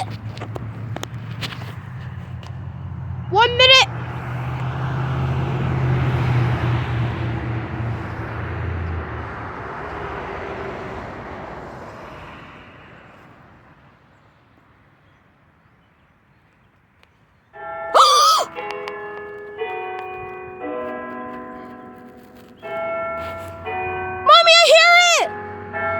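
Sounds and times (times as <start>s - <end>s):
vehicle passing by: 0.0s - 13.9s.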